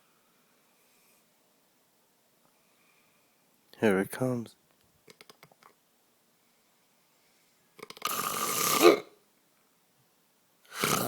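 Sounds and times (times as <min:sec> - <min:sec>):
man snoring: 0:08.0 - 0:09.0, 0:10.7 - 0:11.0.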